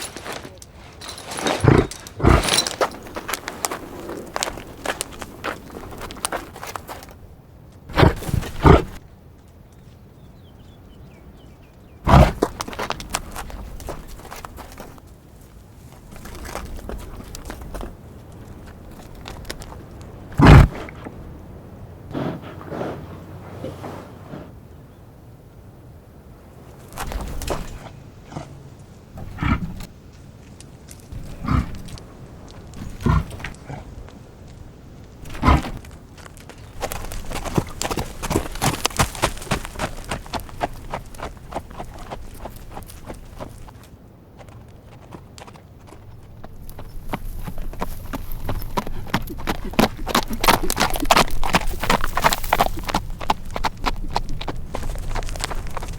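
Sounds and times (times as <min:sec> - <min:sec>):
reindeer grunting: 0:00.2 - 0:06.1, 0:07.9 - 0:09.0, 0:12.0 - 0:12.5, 0:20.3 - 0:21.1, 0:22.1 - 0:24.6, 0:27.5 - 0:29.9, 0:31.1 - 0:32.1, 0:32.7 - 0:34.0, 0:35.2 - 0:35.9.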